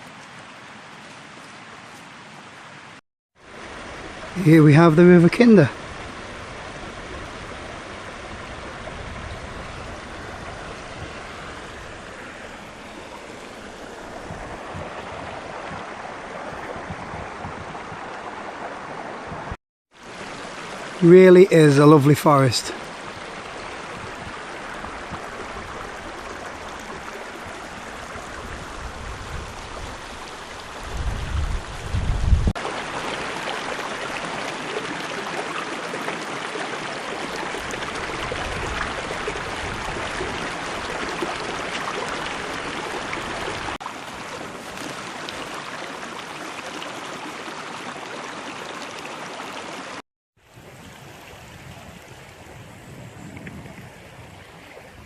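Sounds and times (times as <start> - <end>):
river water flowing: 0.0 - 55.0
wind buffeting microphone: 5.8 - 19.6, 23.3 - 32.6, 37.5 - 43.8, 50.5 - 55.0.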